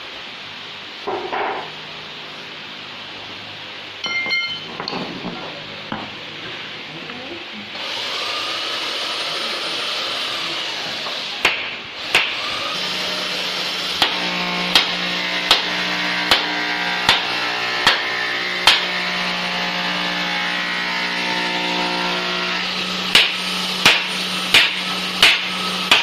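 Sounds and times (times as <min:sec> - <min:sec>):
steady hum: 0:00.0 - 0:26.0.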